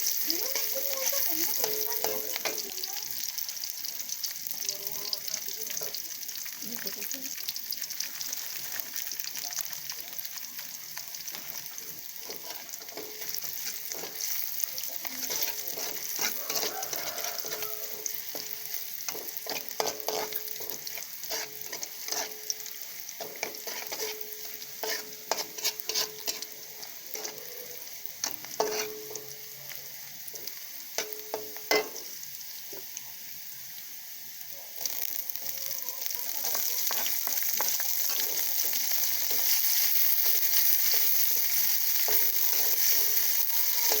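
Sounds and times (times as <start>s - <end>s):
food sizzling in hot oil: 0.0s - 44.0s
spatula scraping a pan: 11.3s - 29.3s, 30.4s - 32.2s, 35.7s - 44.0s.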